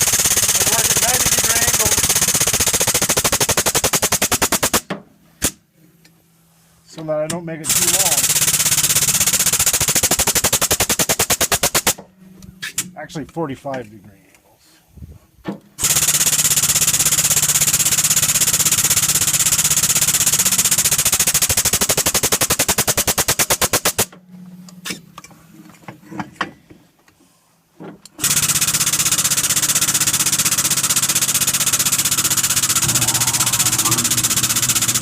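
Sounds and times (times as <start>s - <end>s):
power hammer pounding steel: 32.2s - 35.0s.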